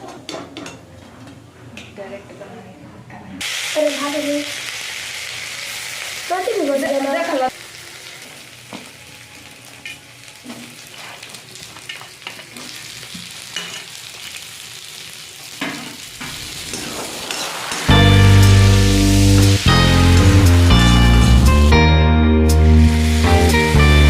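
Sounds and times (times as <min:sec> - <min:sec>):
food sizzling in hot oil: 0:03.4 - 0:21.8, 0:22.4 - 0:24.0
loud background music: 0:17.9 - 0:24.0.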